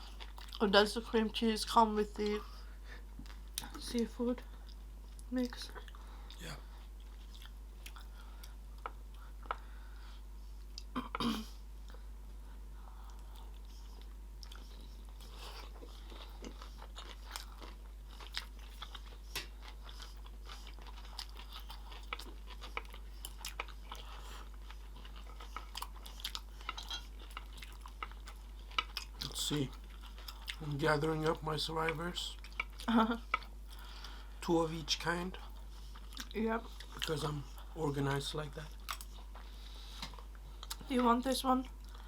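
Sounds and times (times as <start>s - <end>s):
chewing with wet clicks: 0.0s - 0.9s, 3.2s - 6.4s, 7.0s - 9.7s, 13.0s - 34.2s, 35.0s - 42.0s.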